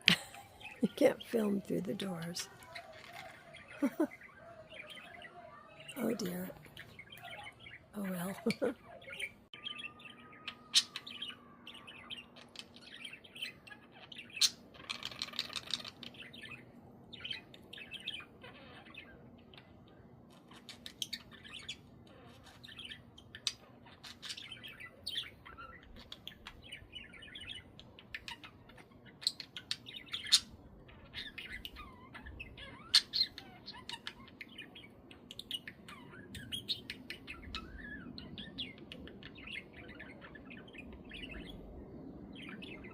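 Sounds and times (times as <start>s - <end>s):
budgies chirping and squawking: 0.0s - 42.9s.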